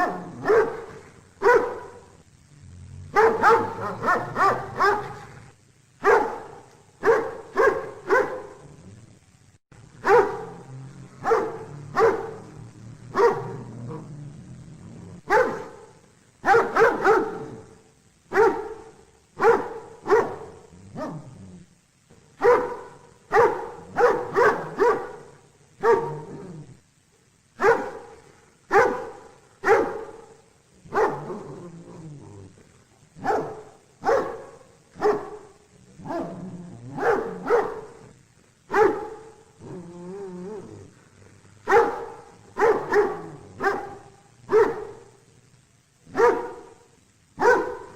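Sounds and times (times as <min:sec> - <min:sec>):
dog barking: 0:00.0 - 0:02.2, 0:03.1 - 0:05.4, 0:06.0 - 0:08.7, 0:10.0 - 0:14.1, 0:15.3 - 0:21.3, 0:22.4 - 0:26.4, 0:27.6 - 0:31.6, 0:33.2 - 0:38.1, 0:38.7 - 0:39.4, 0:41.6 - 0:45.2, 0:46.1 - 0:47.9.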